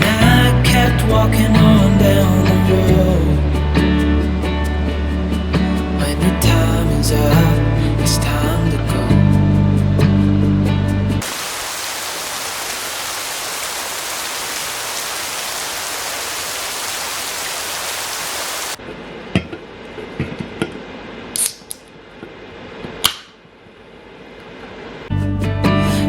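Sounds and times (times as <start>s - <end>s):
music: 0.0s - 11.2s, 25.1s - 26.0s
steady hiss: 11.2s - 18.8s.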